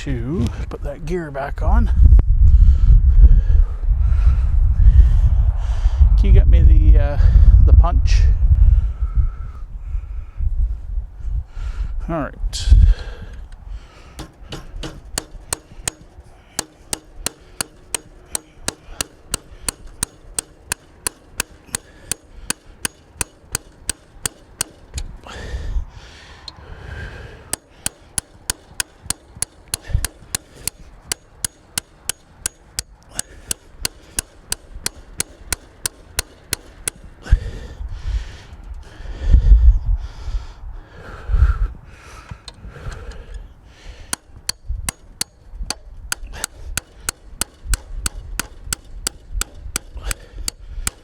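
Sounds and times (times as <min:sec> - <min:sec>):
hammer striking metal punch: 0:14.2 - 0:25.2, 0:27.5 - 0:37.3, 0:44.1 - 0:51.0.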